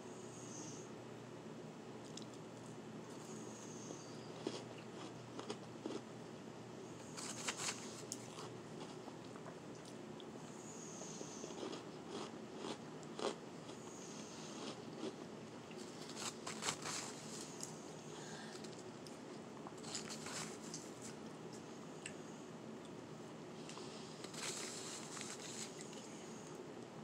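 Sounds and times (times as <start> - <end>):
shaved ice being chewed: 2.0 - 6.0, 7.0 - 10.3, 11.0 - 17.8, 18.6 - 22.2, 23.6 - 26.2.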